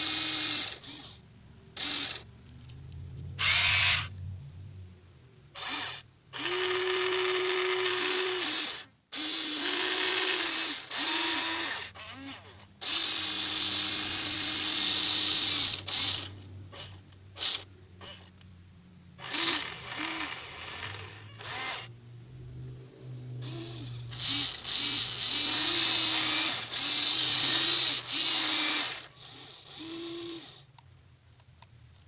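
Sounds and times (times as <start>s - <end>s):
small electric motors whirring: 0.0s - 1.2s, 1.8s - 2.3s, 3.3s - 4.1s, 5.6s - 18.4s, 19.2s - 22.0s, 23.4s - 30.8s.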